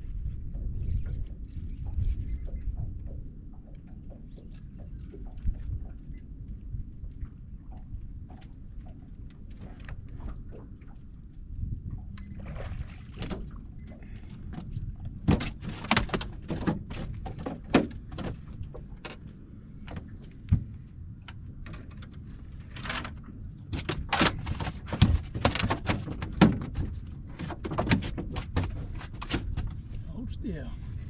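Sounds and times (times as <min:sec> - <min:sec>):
steady low rumble: 0:00.0 - 0:15.6, 0:16.3 - 0:24.6, 0:28.8 - 0:31.0
irregular knocks and clunks: 0:00.5 - 0:06.2, 0:13.1 - 0:30.0.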